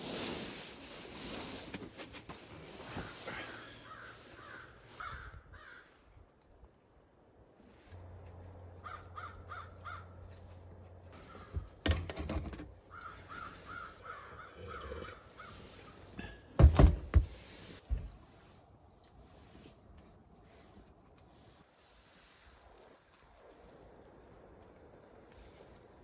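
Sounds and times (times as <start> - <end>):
crow cawing: 3.5 - 5.9, 8.8 - 10.2, 11.2 - 11.6, 12.9 - 15.6.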